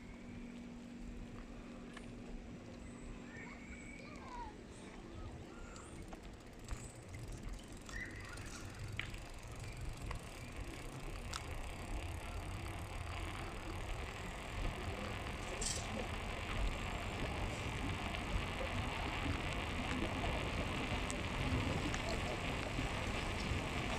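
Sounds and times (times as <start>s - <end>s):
bicycle tyre and wind noise: 5.4s - 23.9s.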